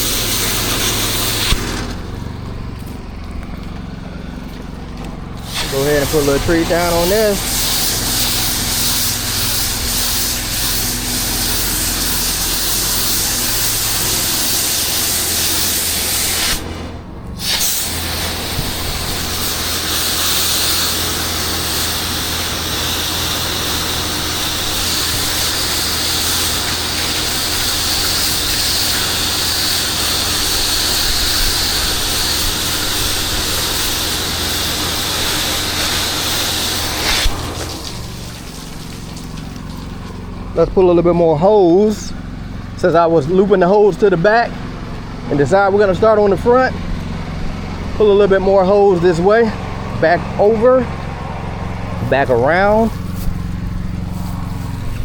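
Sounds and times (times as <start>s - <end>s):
pressure washer spray hissing: 0.0s - 3.2s, 5.2s - 41.1s, 51.0s - 55.0s
motor humming: 0.0s - 55.0s.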